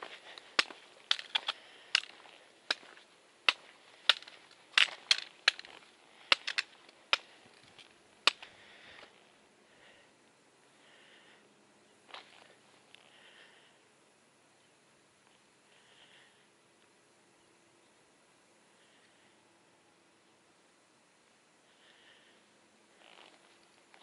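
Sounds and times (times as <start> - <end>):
footsteps on rocky trail: 0.0 - 9.2.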